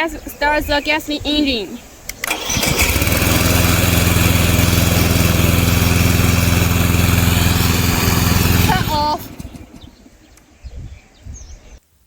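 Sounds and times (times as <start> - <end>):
electric starter cranking: 2.1 - 10.2
mower engine running: 2.2 - 10.2.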